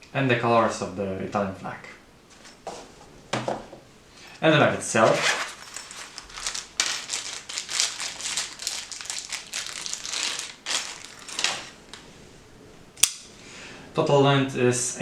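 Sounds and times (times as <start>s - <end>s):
packaging wrapper rustling: 5.0s - 12.1s.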